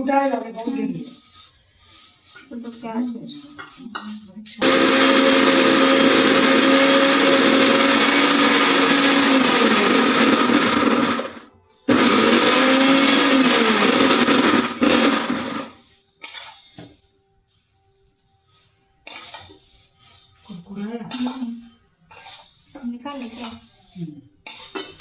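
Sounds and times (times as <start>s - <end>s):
mixer grinder running: 4.6s - 15.8s.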